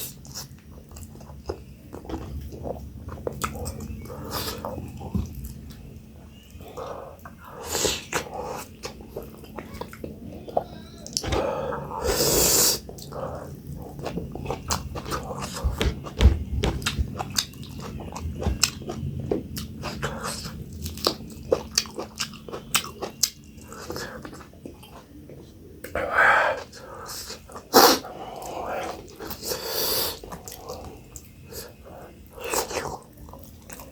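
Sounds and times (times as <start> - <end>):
person chewing and lip smacking: 0.2 - 11.4, 12.8 - 26.0
breathy noises: 9.6 - 16.1, 25.8 - 32.9.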